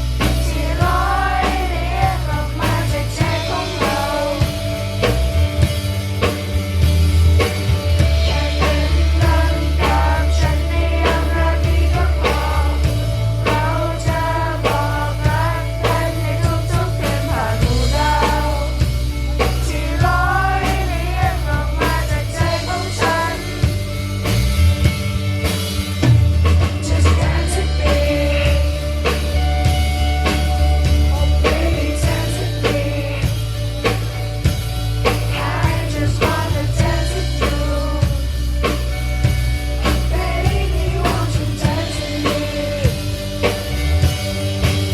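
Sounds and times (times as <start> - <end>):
live rock band playing: 0.0 - 44.9
person singing: 0.2 - 5.2, 8.1 - 23.8, 26.8 - 29.6, 31.0 - 33.7, 35.2 - 38.7, 39.8 - 43.6.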